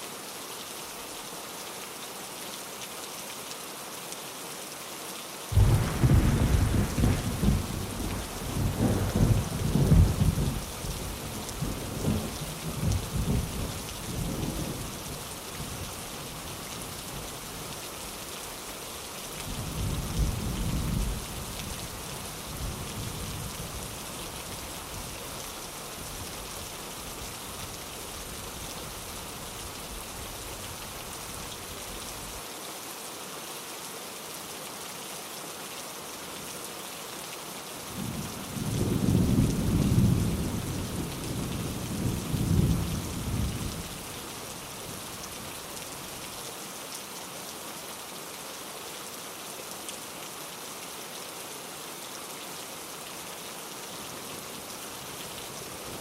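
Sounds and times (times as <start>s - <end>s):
steady rain: 0.0s - 56.0s
thunder rumbling: 5.6s - 13.6s.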